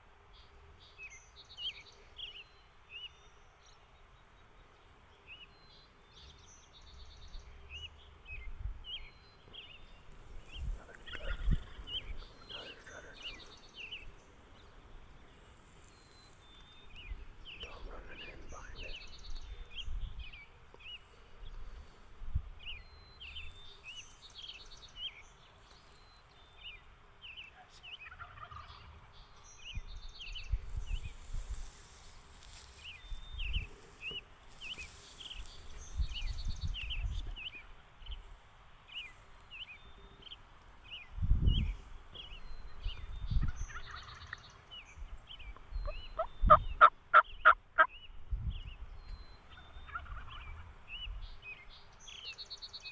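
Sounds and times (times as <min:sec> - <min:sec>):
songbird chirping: 0:00.0 - 0:52.9
turkey gobbling: 0:28.0 - 0:28.9, 0:43.7 - 0:44.4, 0:45.8 - 0:47.9, 0:49.6 - 0:50.4.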